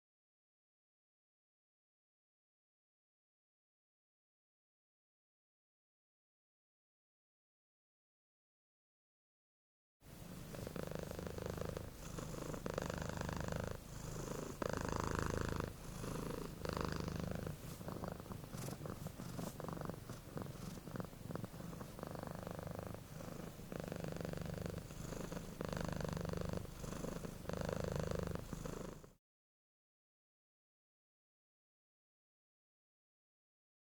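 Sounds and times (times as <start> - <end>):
cat purring: 10.1 - 29.2.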